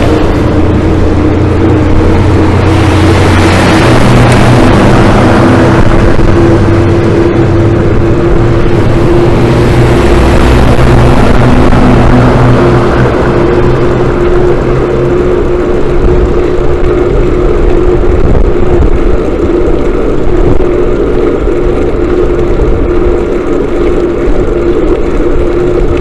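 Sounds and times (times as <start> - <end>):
motorcycle engine droning: 0.0 - 26.0
rushing wind: 0.0 - 26.0.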